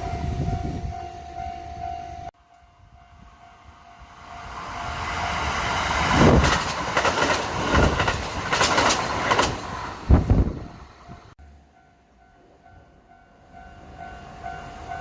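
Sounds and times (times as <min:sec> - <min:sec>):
train wheels rumbling on rails: 0:04.1 - 0:11.4
wheels clacking over rail joints: 0:05.9 - 0:10.0.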